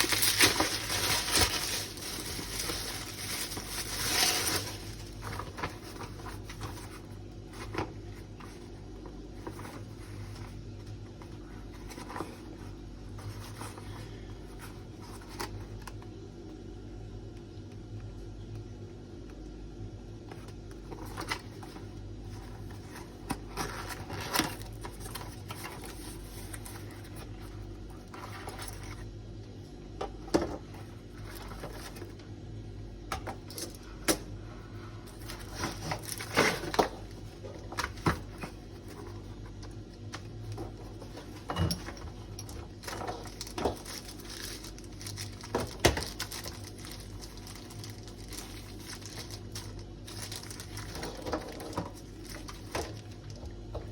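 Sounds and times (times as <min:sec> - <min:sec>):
packaging clicks and rustles: 0:00.0 - 0:12.5, 0:20.4 - 0:29.0, 0:35.0 - 0:53.9
steady low hum: 0:00.0 - 0:53.9.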